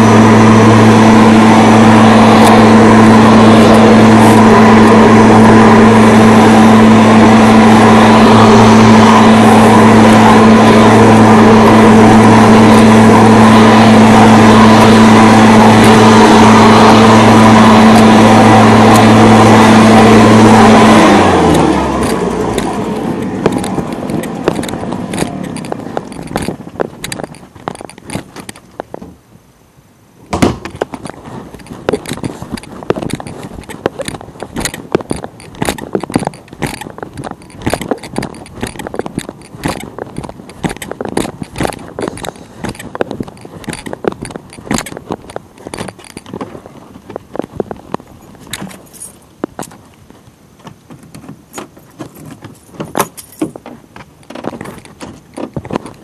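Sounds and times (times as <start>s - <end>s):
engine running and winding down: 0.0s - 28.6s, 31.0s - 48.8s
keys jingling: 48.1s - 49.2s, 51.7s - 53.7s.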